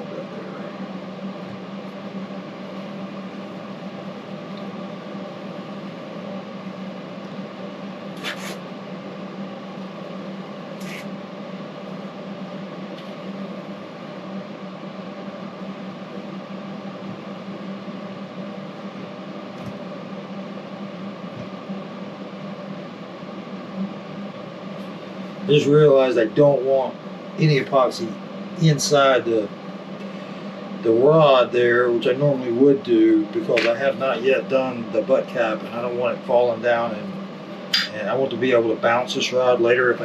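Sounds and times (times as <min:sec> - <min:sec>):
low machine hum: 0:00.0 - 0:40.0
hissing scrapes: 0:08.2 - 0:08.6, 0:10.8 - 0:11.1.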